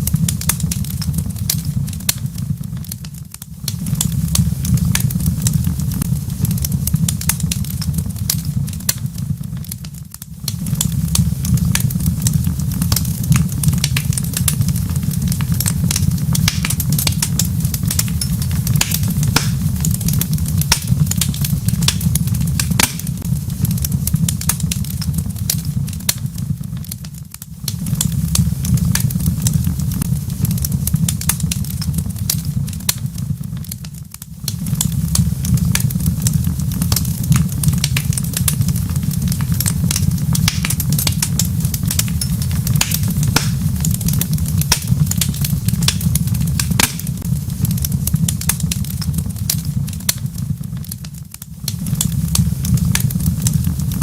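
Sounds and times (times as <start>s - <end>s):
low fire rumble: 0.0s - 54.0s
wood fire crackling: 0.0s - 54.0s.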